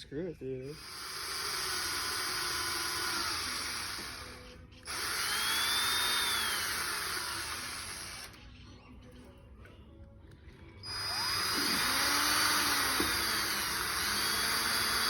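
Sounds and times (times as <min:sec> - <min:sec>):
electric drill running: 0:00.6 - 0:08.4, 0:10.8 - 0:15.0.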